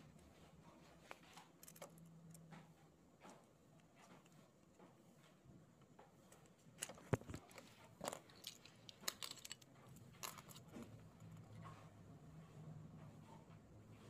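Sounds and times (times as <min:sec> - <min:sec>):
plastic and metal parts clicking: 0:06.4 - 0:11.0.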